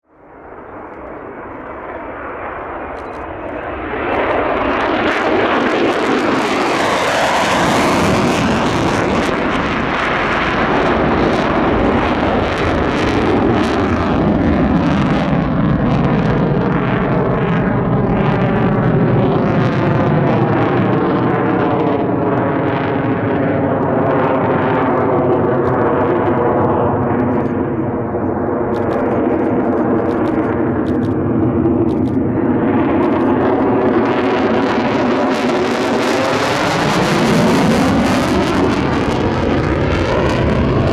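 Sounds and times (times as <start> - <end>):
jet engine roar: 0.0 - 40.9.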